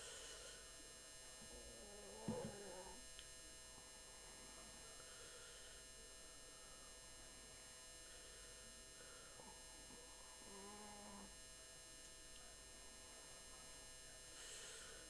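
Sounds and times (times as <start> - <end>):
electrical mains hum: 0.0 - 15.0
faint high whine: 0.0 - 15.0.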